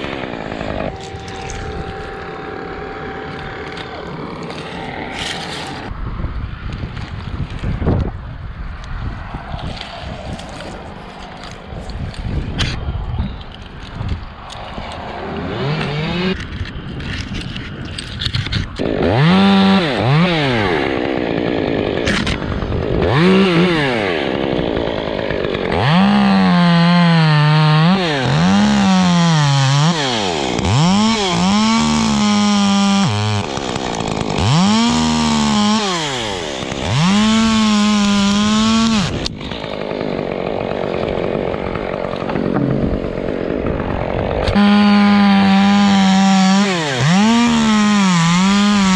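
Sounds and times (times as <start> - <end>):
chainsaw engine revving: 14.9 - 16.5, 18.8 - 48.9.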